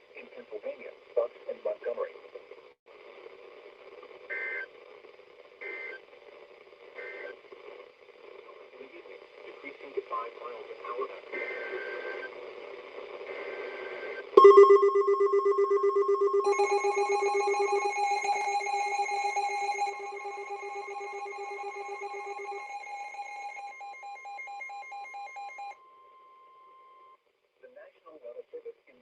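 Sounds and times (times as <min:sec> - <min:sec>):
electronic alert tone trilling: 0:14.4 - 0:25.8.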